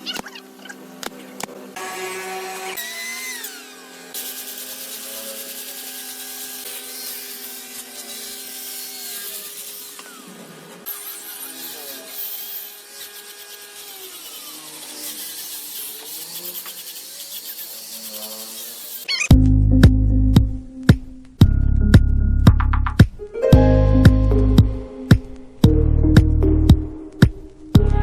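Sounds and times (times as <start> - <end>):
tool sanding wood: 1.8 - 19.2.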